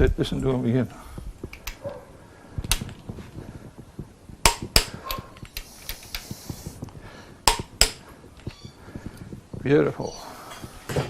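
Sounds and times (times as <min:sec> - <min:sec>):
torque wrench clicking: 0:04.5 - 0:08.7.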